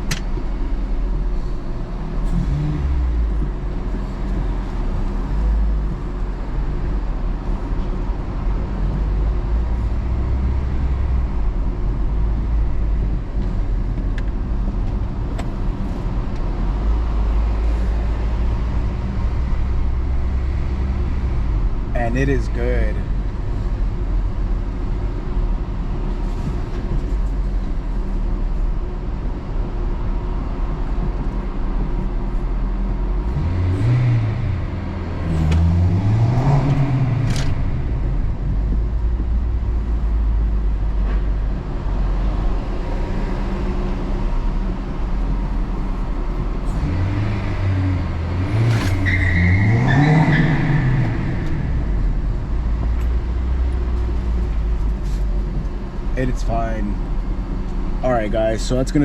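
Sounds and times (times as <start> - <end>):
road noise: 0.0 - 59.0
car engine revving: 33.2 - 40.8, 42.6 - 58.0.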